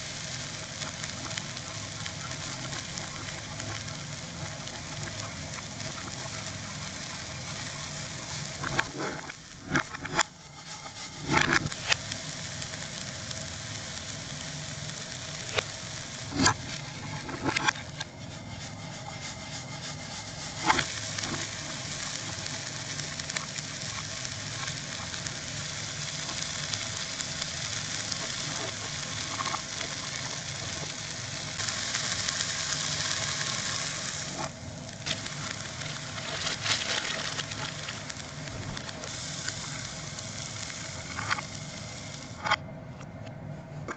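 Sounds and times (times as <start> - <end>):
vegetables sizzling in a frying pan: 0.0 - 42.6.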